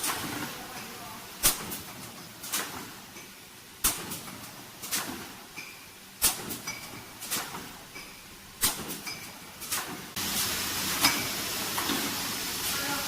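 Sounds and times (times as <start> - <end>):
steady hiss: 7.2 - 13.0.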